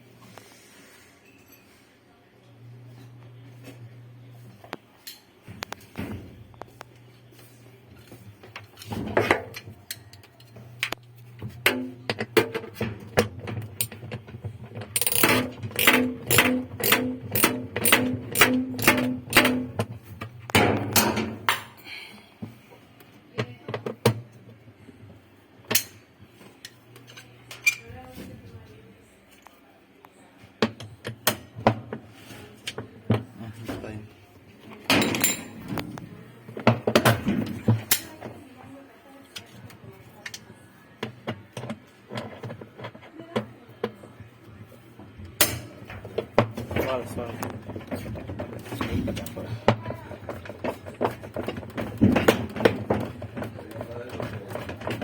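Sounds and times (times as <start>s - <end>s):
metal clinks and knocks: 14.8s - 19.8s.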